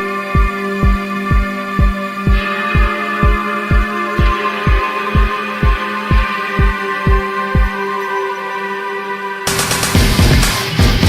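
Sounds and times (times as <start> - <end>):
kick drum: 0.0 - 7.7, 9.9 - 11.0
sustained synth chords: 0.0 - 11.0.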